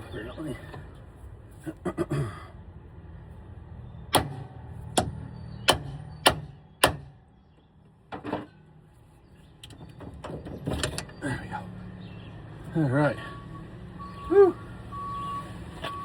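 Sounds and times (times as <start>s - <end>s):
hammer striking metal chisel: 5.0s - 7.1s.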